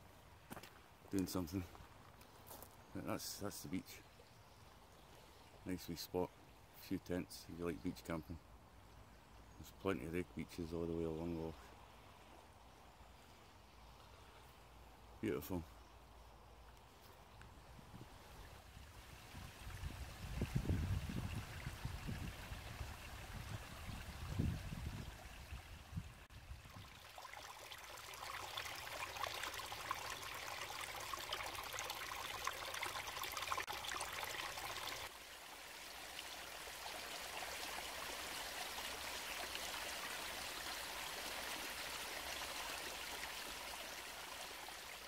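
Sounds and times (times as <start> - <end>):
running water splashing: 26.5 - 45.0.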